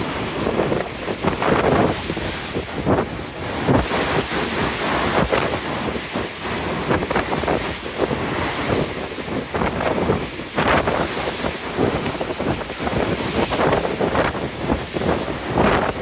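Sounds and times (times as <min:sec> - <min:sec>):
ocean waves rushing: 0:00.0 - 0:16.0
wind buffeting microphone: 0:00.0 - 0:16.0.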